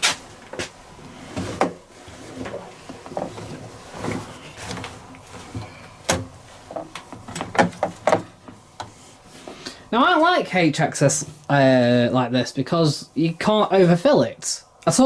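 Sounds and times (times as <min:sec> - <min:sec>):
soft handling rustle: 0:00.0 - 0:09.8.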